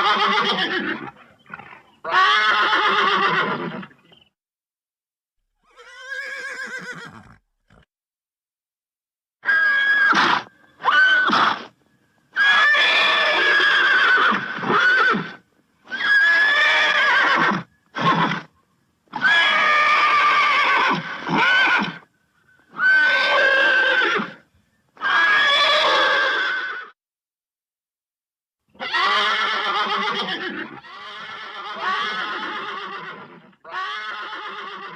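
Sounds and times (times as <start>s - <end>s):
animal calling loudly: 0.0s - 3.8s, 28.8s - 33.0s.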